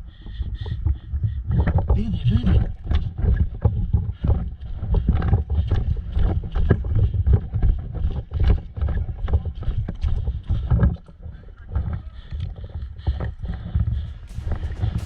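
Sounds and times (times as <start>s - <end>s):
wind on microphone: 0.0s - 15.0s
low handling rumble: 13.3s - 15.0s
footsteps: 13.4s - 15.0s.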